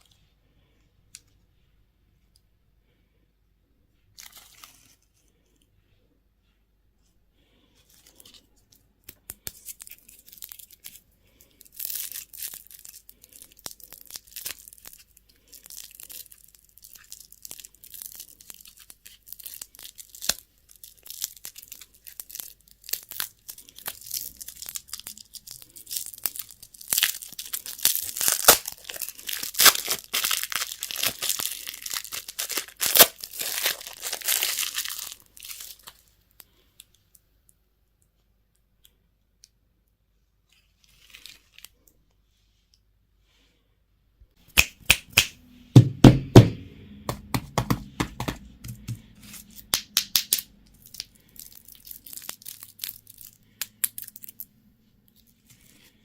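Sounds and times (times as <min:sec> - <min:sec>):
candy packaging crinkling and tearing: 0:04.2 - 0:05.3, 0:07.8 - 0:37.2, 0:40.6 - 0:42.0, 0:47.6 - 0:56.0.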